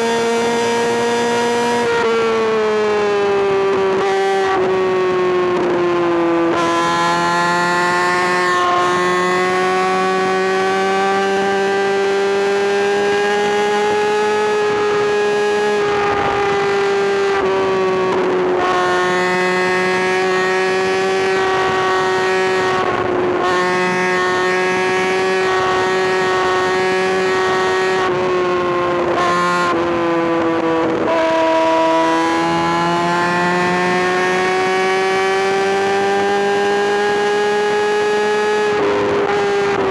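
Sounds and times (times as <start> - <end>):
motorcycle engine revving high: 0.0 - 39.9.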